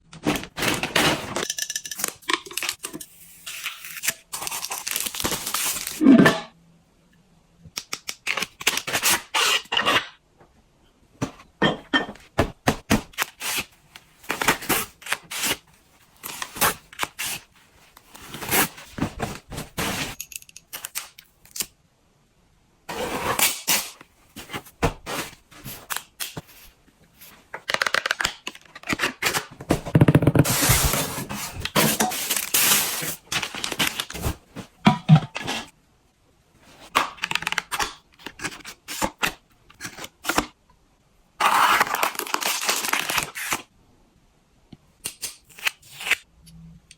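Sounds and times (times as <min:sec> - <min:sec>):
paper and plastic rustling: 0:28.8 - 0:35.7.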